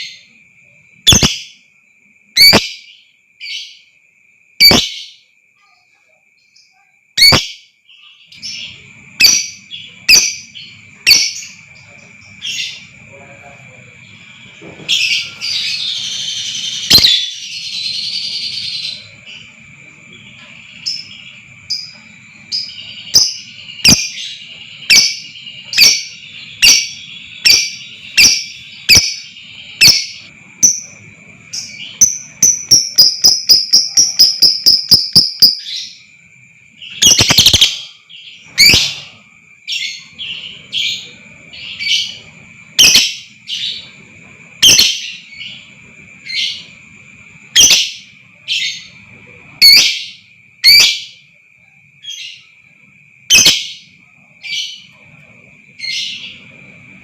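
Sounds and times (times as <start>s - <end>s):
lovebird shrill chirps: 1.0s - 1.6s, 2.4s - 3.9s, 4.6s - 5.2s, 6.6s - 12.9s, 14.9s - 19.5s, 20.2s - 36.0s, 36.8s - 39.0s, 42.8s - 43.7s, 44.6s - 45.6s, 47.5s - 48.9s, 49.6s - 51.2s, 53.3s - 54.9s.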